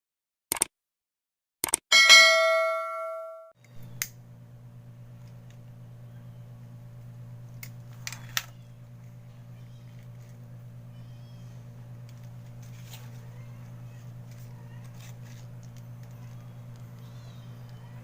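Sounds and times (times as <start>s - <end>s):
ringing chime tone: 1.9s - 3.5s
steady low hum: 2.1s - 18.0s.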